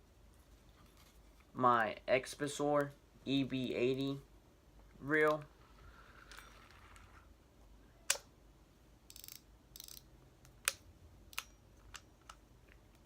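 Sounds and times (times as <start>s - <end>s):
fishing reel ratcheting buzz: 9.1s - 10.0s
fishing reel clicks: 9.1s - 10.1s.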